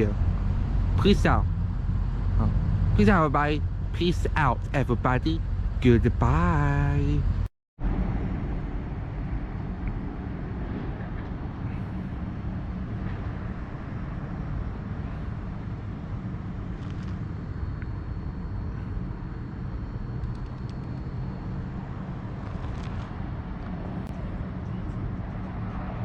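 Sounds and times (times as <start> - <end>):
low rumble of vehicle noise: 0.0 - 26.0
faint thin high whine: 8.0 - 25.8.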